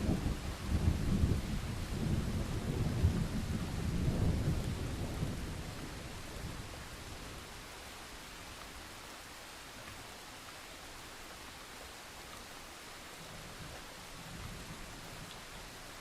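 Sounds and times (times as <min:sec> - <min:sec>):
low rumble of thunder: 0:00.0 - 0:07.7, 0:13.2 - 0:15.8
steady rain: 0:00.0 - 0:16.0.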